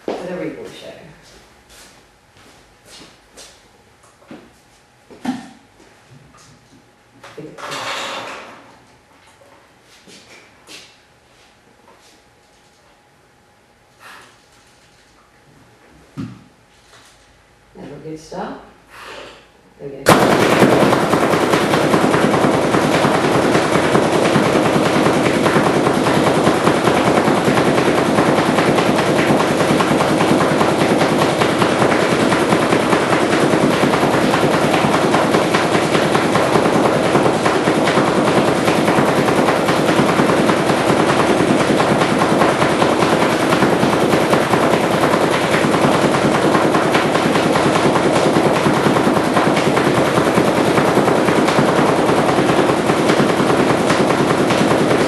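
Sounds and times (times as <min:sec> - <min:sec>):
paintball marker rapid firing: 0:20.1 - 0:55.0.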